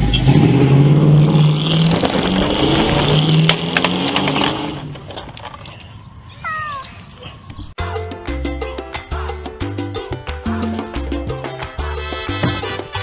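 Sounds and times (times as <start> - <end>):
engine running and revving: 0.0 - 4.9.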